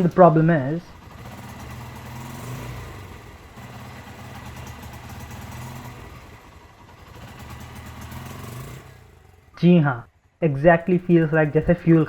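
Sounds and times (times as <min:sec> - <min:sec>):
motorcycle engine misfiring: 0:01.0 - 0:10.4.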